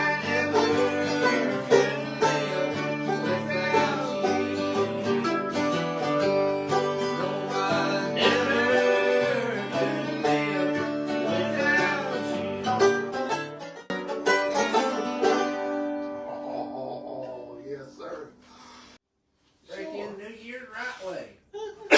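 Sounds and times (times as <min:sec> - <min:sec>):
bluegrass string-band music: 0:00.0 - 0:16.4.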